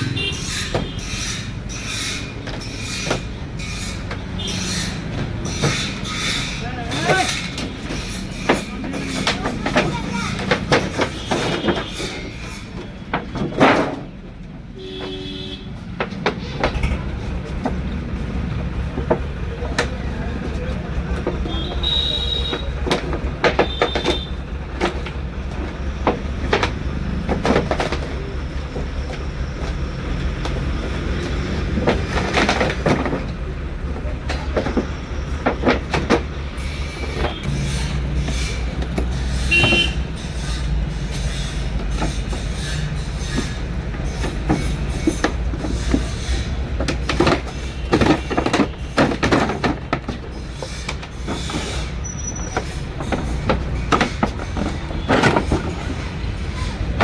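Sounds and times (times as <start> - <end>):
knocks and rattles: 0.0 - 14.4, 15.8 - 57.0
vehicle rumble: 0.0 - 57.0
brief squeaks: 50.8 - 52.8.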